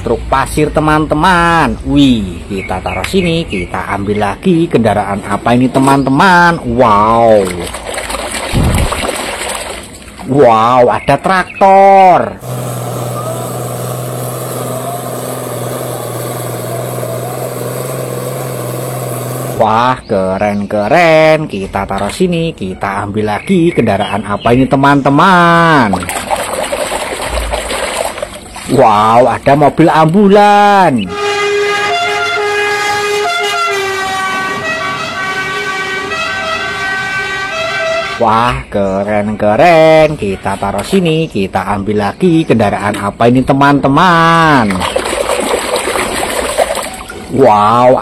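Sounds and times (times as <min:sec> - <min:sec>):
engine-like drone: 0:12.2 - 0:20.0
ambulance siren: 0:31.1 - 0:38.2.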